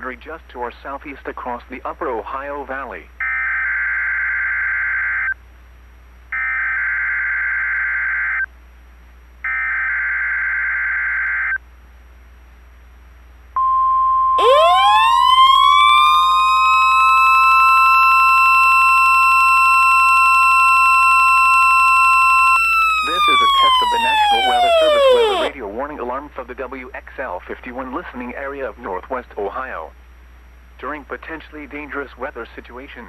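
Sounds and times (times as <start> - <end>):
rising tone with overtones: 14.4 - 19.1, 22.5 - 25.5
steady warning alarm tone: 14.4 - 25.5
warbling data tones: 14.4 - 25.5.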